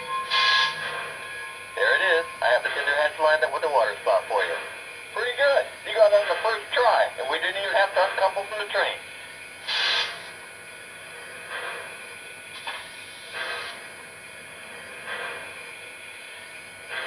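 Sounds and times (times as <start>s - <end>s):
steam hisses: 0.3s - 1.2s, 7.6s - 17.0s.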